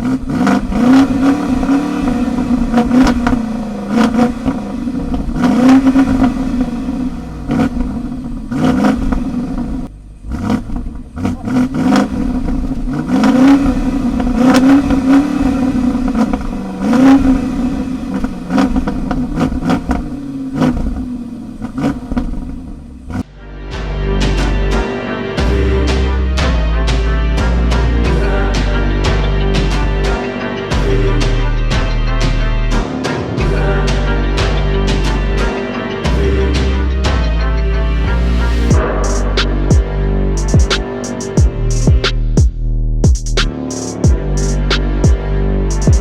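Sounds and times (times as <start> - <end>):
exhaust cracks: 0.0 - 23.2, 38.6 - 46.0
car engine revving: 0.0 - 23.4, 24.2 - 46.0.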